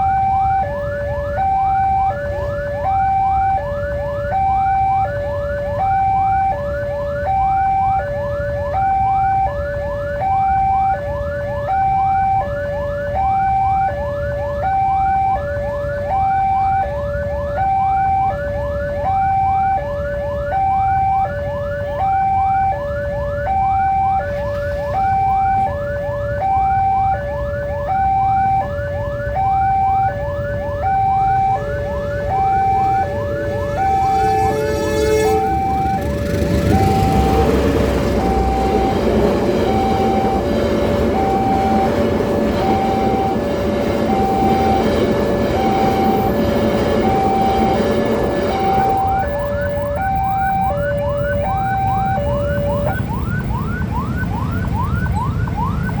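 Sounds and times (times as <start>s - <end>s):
level crossing alarm alternating tones: 0.0s - 56.0s
steady low rumble: 37.0s - 50.6s.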